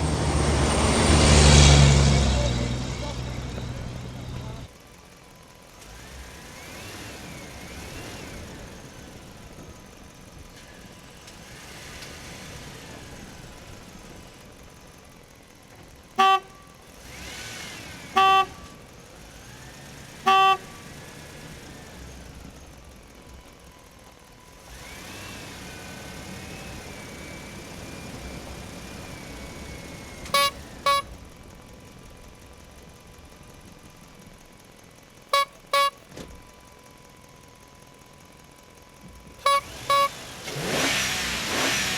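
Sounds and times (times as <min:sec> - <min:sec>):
quick beeps: 0:16.2 - 0:16.6, 0:18.2 - 0:18.6, 0:20.3 - 0:20.6, 0:30.4 - 0:31.1, 0:35.4 - 0:36.0, 0:39.5 - 0:40.1
toy electronic horn tooting: 0:16.2 - 0:16.7, 0:18.2 - 0:18.8, 0:20.2 - 0:20.8, 0:30.3 - 0:31.2, 0:35.3 - 0:36.1, 0:39.4 - 0:40.3.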